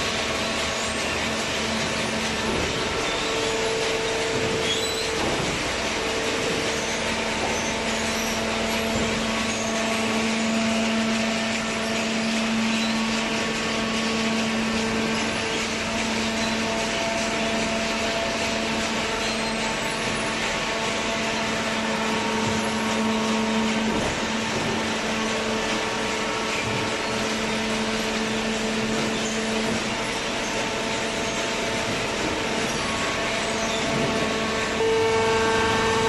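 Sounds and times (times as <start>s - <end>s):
hydraulic baler humming: 0.0s - 36.0s.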